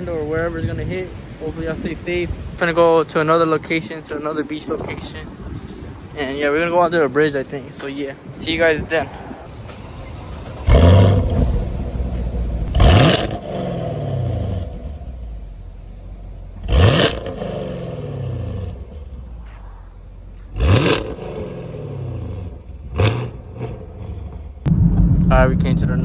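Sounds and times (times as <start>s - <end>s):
car engine revving: 8.5s - 26.0s.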